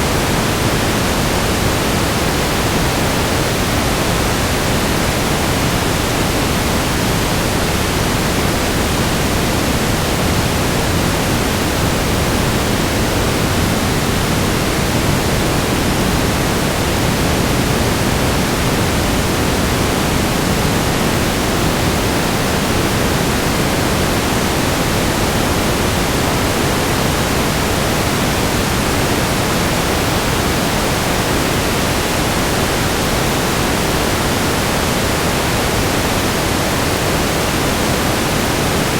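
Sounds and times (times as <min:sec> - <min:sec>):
loud steady static hiss: 0:00.0 - 0:38.9.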